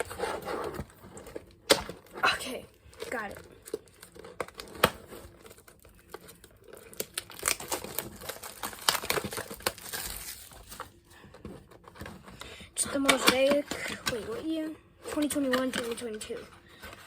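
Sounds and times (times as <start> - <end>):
packaging crinkling and tearing: 0.0 - 11.0.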